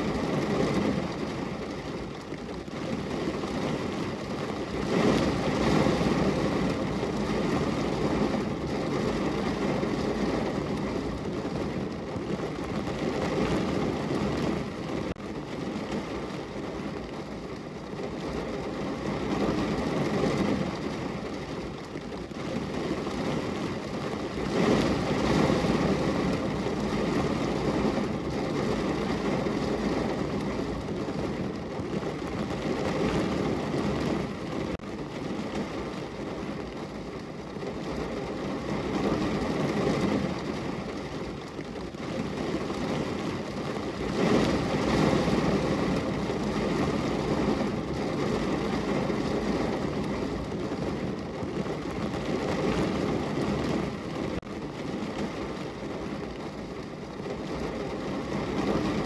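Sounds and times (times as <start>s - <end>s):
rain on a window: 0.0s - 59.0s.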